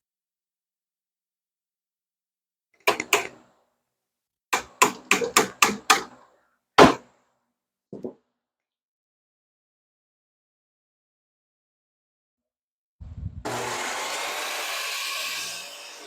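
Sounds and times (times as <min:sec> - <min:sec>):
hammer tapping a wooden shim: 0:04.6 - 0:06.1.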